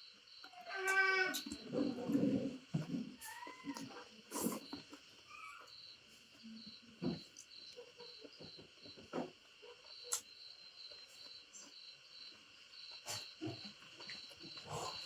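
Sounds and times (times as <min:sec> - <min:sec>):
crickets chirping: 0:00.0 - 0:15.0.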